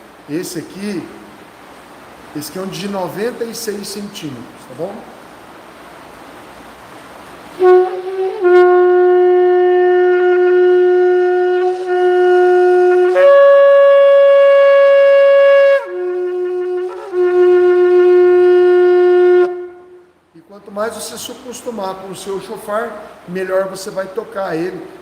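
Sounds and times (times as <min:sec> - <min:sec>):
shofar blown in long notes: 0:07.6 - 0:20.2.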